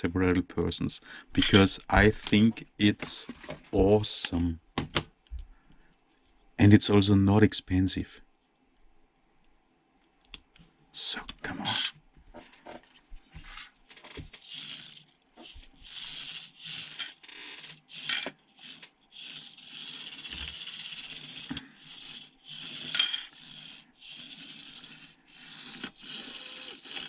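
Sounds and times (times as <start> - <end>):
toy car motor whirring: 14.0 - 27.0.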